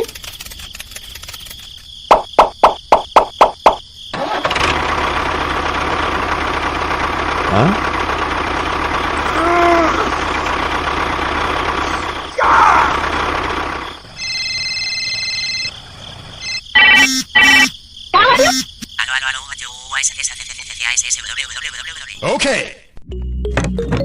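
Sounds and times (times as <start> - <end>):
short sharp pulses: 16.8 - 17.7.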